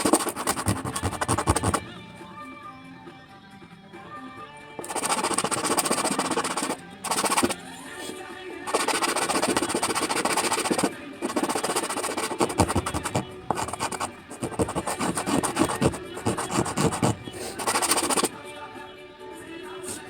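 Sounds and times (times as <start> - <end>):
sandpaper rubbing on wood: 0.0 - 1.8, 4.8 - 18.3
background music: 0.0 - 20.0.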